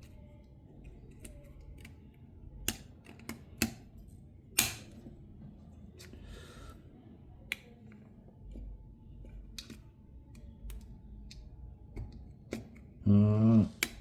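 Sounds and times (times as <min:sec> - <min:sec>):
small phone parts clicking: 0:00.8 - 0:04.0, 0:04.6 - 0:05.1, 0:09.2 - 0:12.9.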